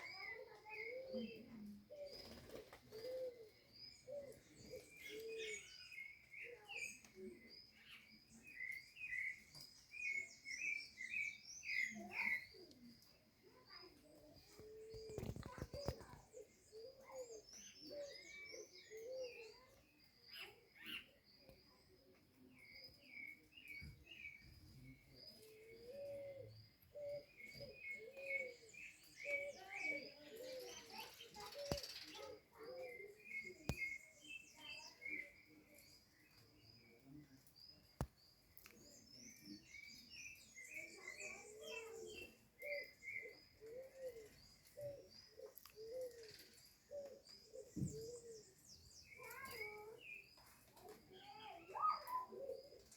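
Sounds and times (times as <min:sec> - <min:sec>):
bird cooing: 0:00.0 - 0:07.5, 0:10.0 - 0:12.9, 0:14.0 - 0:19.8, 0:24.8 - 0:36.0, 0:38.8 - 0:48.6, 0:49.2 - 0:49.9, 0:50.8 - 0:52.9
small birds chirping: 0:00.0 - 0:52.9.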